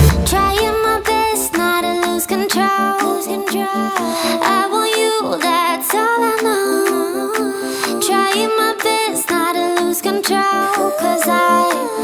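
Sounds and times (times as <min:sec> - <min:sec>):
repeating bass line: 0:00.0 - 0:02.8
background pop music: 0:00.0 - 0:12.0
wordless vocal or synth melody: 0:00.0 - 0:12.0.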